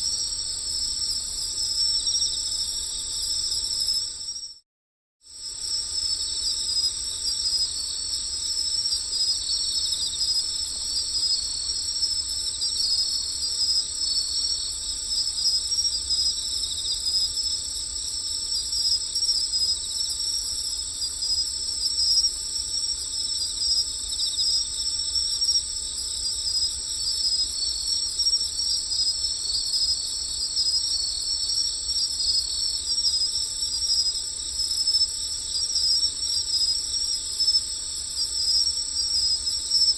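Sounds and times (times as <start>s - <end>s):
crickets trilling: 0.0s - 4.6s, 5.3s - 39.9s.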